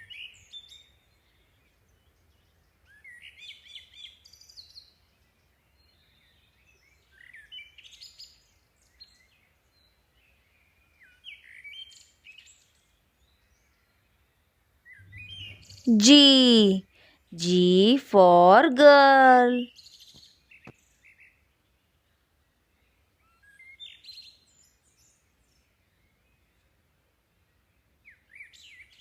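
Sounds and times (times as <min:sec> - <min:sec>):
birds chirping: 0:14.9 - 0:16.8.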